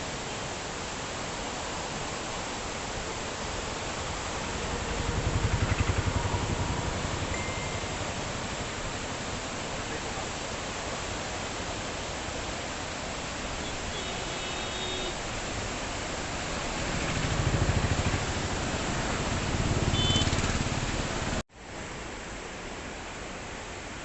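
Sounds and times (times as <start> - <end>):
floodwater rushing: 0.0 - 23.8.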